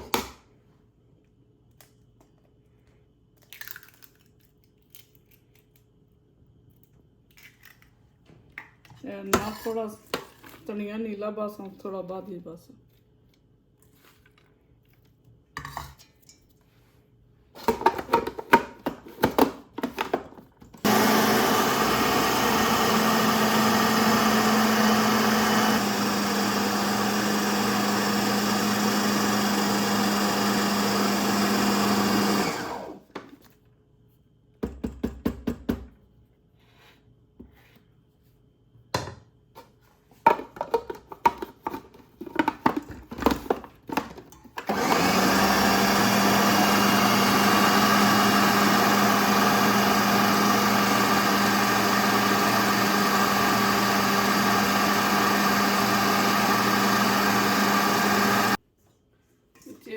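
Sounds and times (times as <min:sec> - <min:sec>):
electric grinder running: 0:20.8 - 0:33.0, 0:44.7 - 0:58.6.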